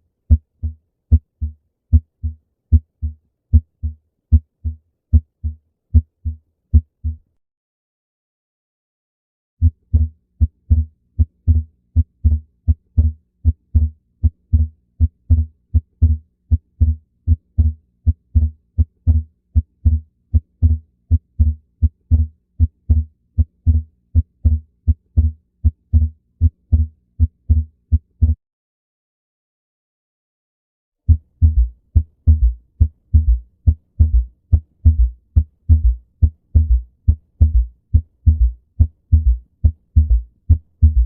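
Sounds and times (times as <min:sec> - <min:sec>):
heartbeat thuds through stethoscope: 0:09.6 - 0:20.0, 0:31.1 - 0:41.0.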